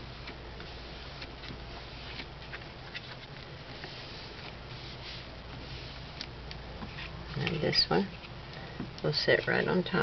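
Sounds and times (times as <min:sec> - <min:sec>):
paper rustling: 0:00.0 - 0:07.2
low room hum: 0:00.0 - 0:10.0.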